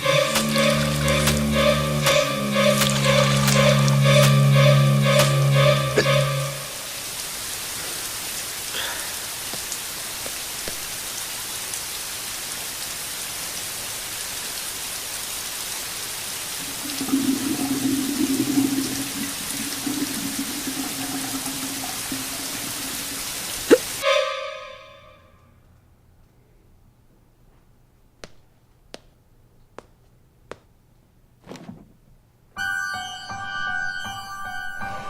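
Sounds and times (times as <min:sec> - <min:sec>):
steady hiss like rain: 0:00.0 - 0:24.0.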